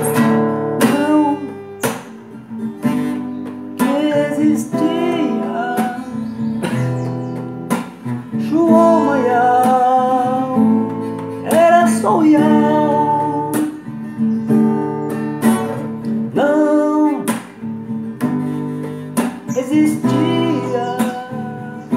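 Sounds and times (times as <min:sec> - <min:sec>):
acoustic guitar strumming: 0:00.0 - 0:21.9
person singing long vowels: 0:03.8 - 0:06.8, 0:08.4 - 0:13.7, 0:19.5 - 0:21.9.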